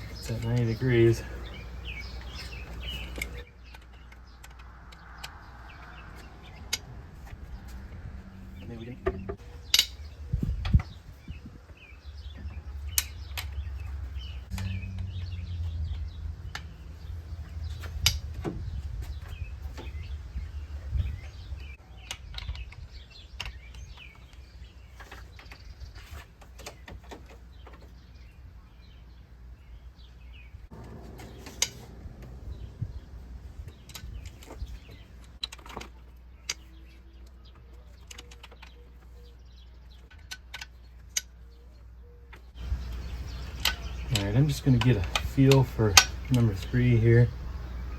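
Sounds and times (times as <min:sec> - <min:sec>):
birds chirping: 0:00.0 - 0:47.9
low rumble: 0:04.7 - 0:11.4, 0:12.0 - 0:21.8, 0:30.6 - 0:35.4.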